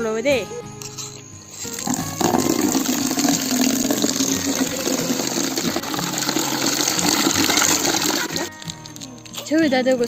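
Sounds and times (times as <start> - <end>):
water gushing into container: 1.7 - 8.6
water running from a tap: 1.7 - 8.6.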